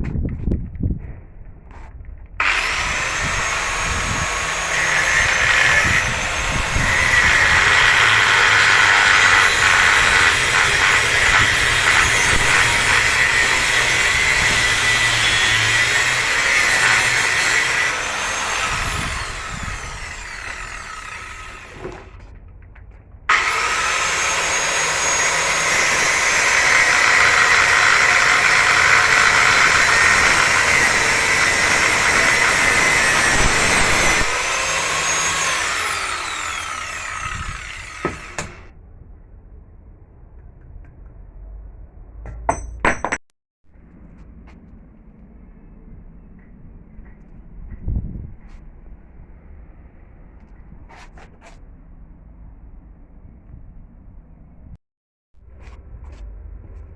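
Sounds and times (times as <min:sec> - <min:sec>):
angle grinder grinding metal: 0:02.4 - 0:22.2, 0:23.3 - 0:38.7.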